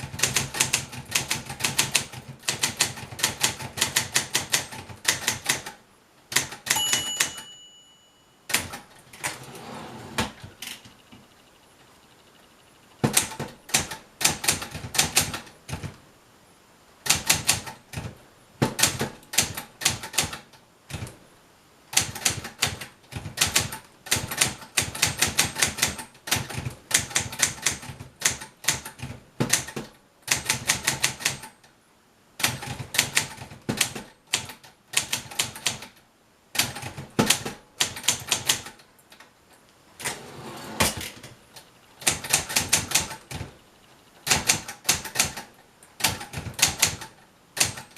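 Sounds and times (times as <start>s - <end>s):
typewriter key clacks: 44.2s - 47.9s.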